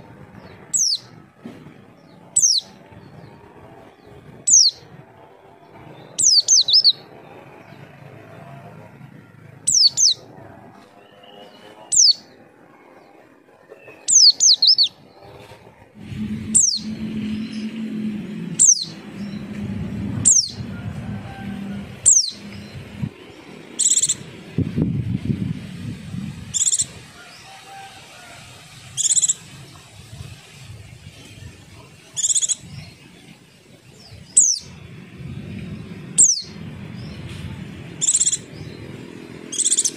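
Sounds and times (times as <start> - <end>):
low rumbling background: 15.4 - 27.5, 32.7 - 39.5
bird high falling calls: 16.0 - 24.4, 26.5 - 30.0, 38.0 - 39.9.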